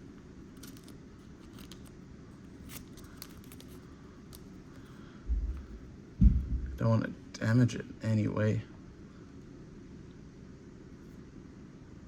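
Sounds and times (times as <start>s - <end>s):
low room hum: 0.0s - 12.0s
card and plastic sleeve rustling: 0.5s - 5.8s.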